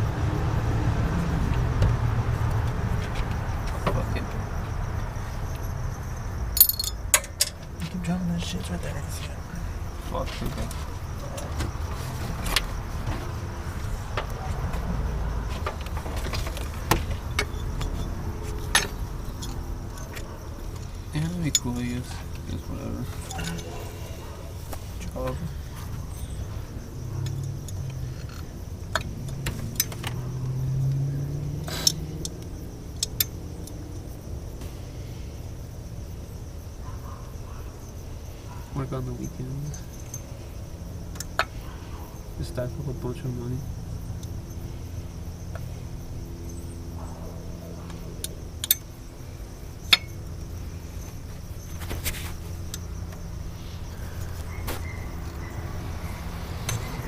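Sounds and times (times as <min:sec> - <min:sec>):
metallic clinks of hand tools: 0:06.6 - 0:07.6.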